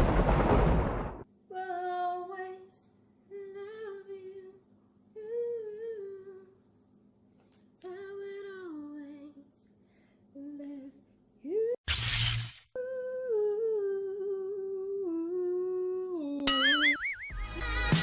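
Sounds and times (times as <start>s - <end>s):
loud rushing noise: 0.0s - 1.2s
woman humming: 12.9s - 17.0s.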